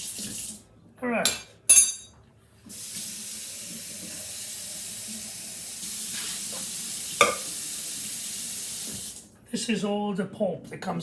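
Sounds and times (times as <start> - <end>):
running water hissing: 2.7 - 9.3.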